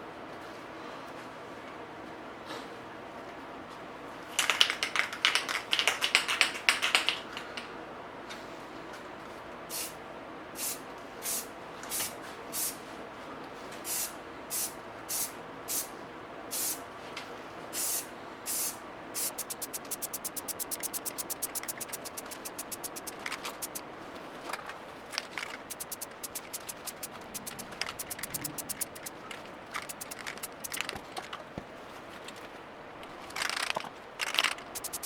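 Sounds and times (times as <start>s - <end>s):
spray can hissing bursts: 9.7s - 9.9s, 10.6s - 11.4s, 13.9s - 15.9s, 16.5s - 16.8s, 17.8s - 23.8s, 25.6s - 29.1s, 29.8s - 30.9s, 34.8s - 35.0s
spray can mixing ball rattling: 17.8s - 23.8s, 25.4s - 29.2s, 29.8s - 30.9s, 34.4s - 35.0s.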